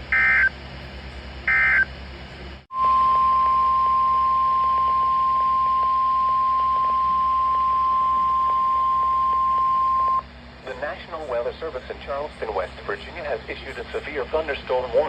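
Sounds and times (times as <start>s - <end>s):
screeching data burst: 0.1s - 0.5s, 1.5s - 1.9s
steady high alarm tone: 0.1s - 0.5s, 1.5s - 1.9s, 2.7s - 10.2s.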